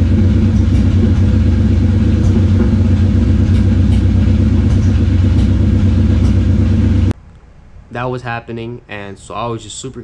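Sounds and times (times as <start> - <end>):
car engine misfiring and sputtering: 0.0 - 7.2.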